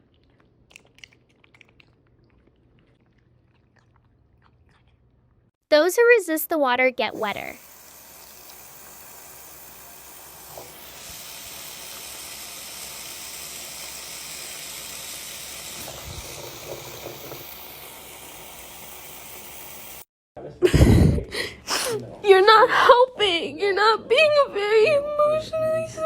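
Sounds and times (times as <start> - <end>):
water spraying: 7.1 - 20.1.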